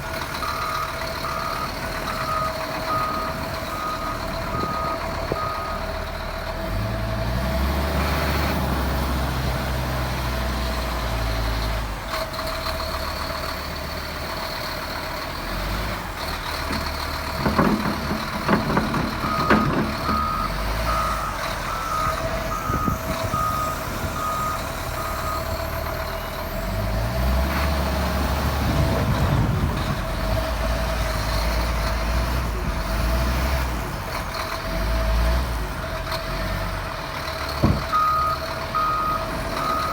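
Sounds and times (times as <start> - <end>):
diesel engine revving: 0.0 - 39.9
reversing alarm beeping: 0.4 - 5.9, 18.0 - 25.8, 37.6 - 39.9
loud metal clanks: 16.7 - 20.4.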